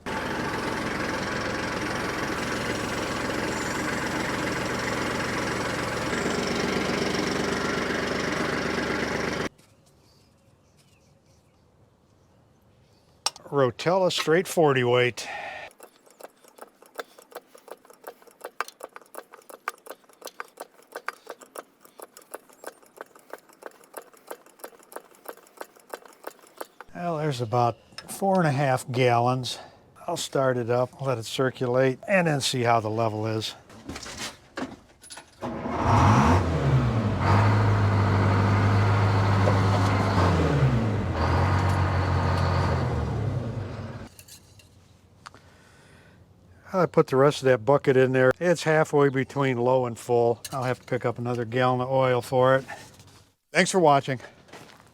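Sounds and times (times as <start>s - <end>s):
two-stroke diesel engine running: 0.0s - 9.5s, 35.4s - 44.1s
motor oil glugging: 15.7s - 27.0s.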